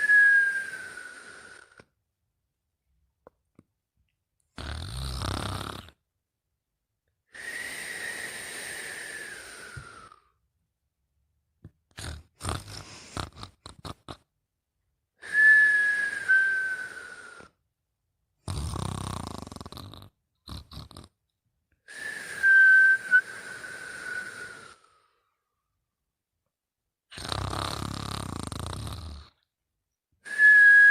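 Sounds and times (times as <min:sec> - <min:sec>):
whistling snoring: 0:00.0 - 0:01.9, 0:04.6 - 0:06.0, 0:07.4 - 0:10.4, 0:11.9 - 0:14.2, 0:15.2 - 0:17.6, 0:18.5 - 0:21.1, 0:21.9 - 0:25.2, 0:27.1 - 0:29.5, 0:30.3 - 0:30.9
short snorts and clicks: 0:11.9 - 0:14.3, 0:18.5 - 0:21.2, 0:27.1 - 0:29.5.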